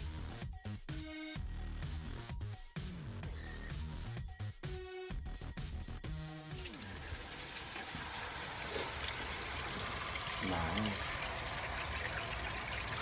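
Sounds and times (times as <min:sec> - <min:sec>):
water trickling: 0:06.8 - 0:13.0.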